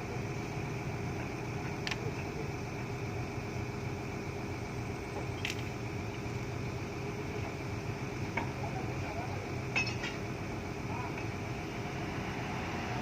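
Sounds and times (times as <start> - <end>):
low engine hum: 0.0 - 13.0.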